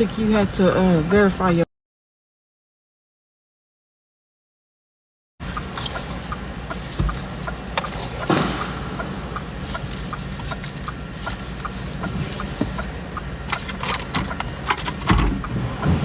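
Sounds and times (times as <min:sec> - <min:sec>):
car engine idling: 0:05.9 - 0:16.0.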